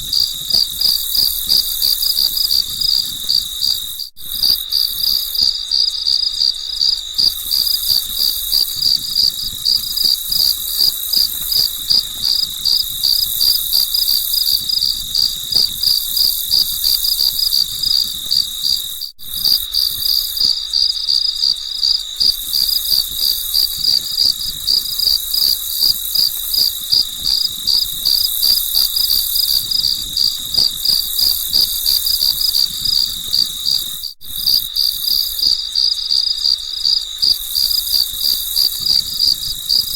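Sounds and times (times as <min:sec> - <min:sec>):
crickets chirping: 0:00.0 - 0:39.9.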